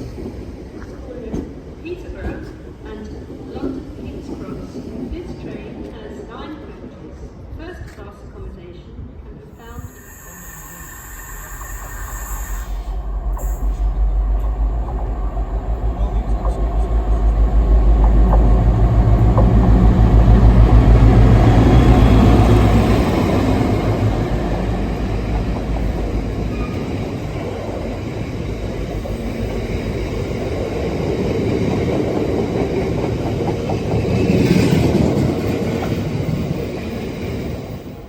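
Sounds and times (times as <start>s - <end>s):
diesel locomotive engine throbbing: 9.8s - 36.8s.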